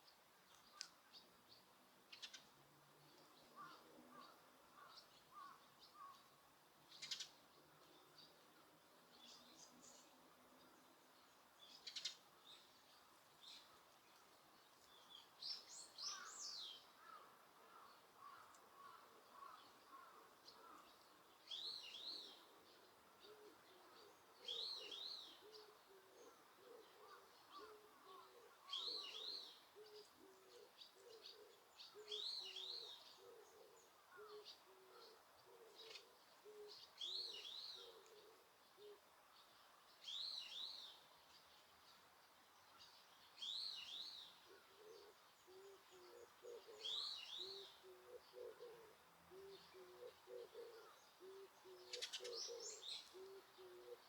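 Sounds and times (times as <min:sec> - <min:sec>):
bird high song phrase: 0:49.4 - 0:54.0.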